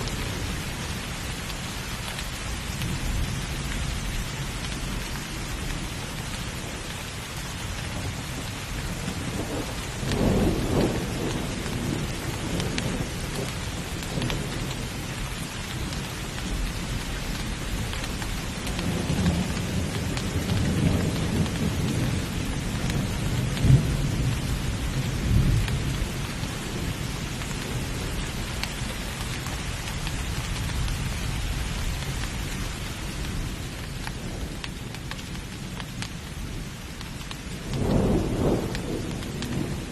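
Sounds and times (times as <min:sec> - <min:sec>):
heavy rain: 0:00.0 - 0:39.9
rolling thunder rumble: 0:02.7 - 0:39.9
sharp thunder crack: 0:37.7 - 0:39.9.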